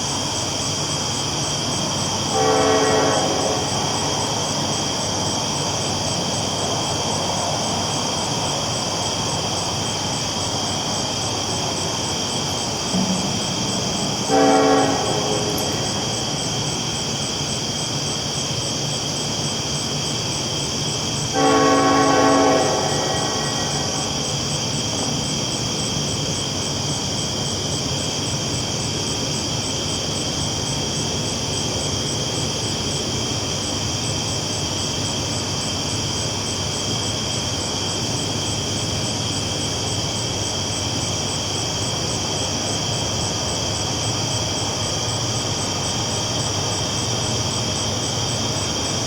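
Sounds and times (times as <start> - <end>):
train rumbling on tracks: 0.0 - 49.0
train horn blasts: 2.3 - 4.4, 12.9 - 16.9, 21.3 - 24.6.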